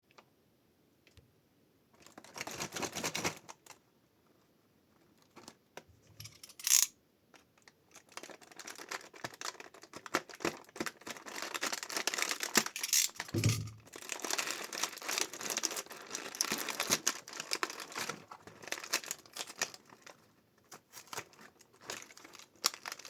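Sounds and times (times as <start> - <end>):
plastic wrapping crinkling and tearing: 2.0 - 3.8, 7.4 - 23.0.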